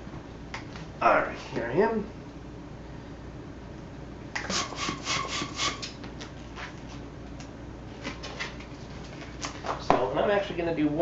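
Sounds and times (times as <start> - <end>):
rubber balloon squeaking: 4.4 - 5.9.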